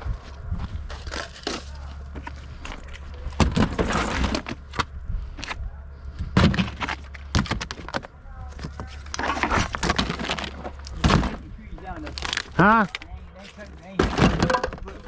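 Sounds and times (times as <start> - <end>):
steady low hum: 0.0 - 15.0
scrap metal knocks and clanks: 13.4 - 15.0.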